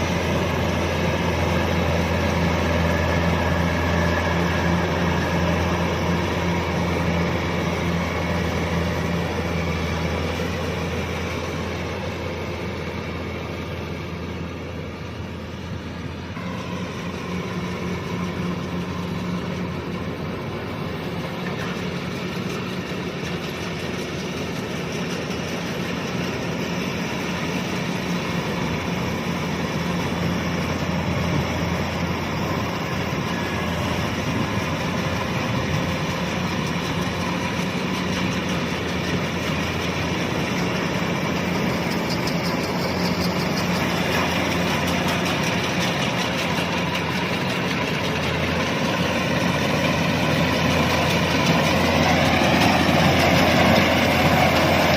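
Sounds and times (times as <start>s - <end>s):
combine harvester diesel drone: 0.0s - 54.9s.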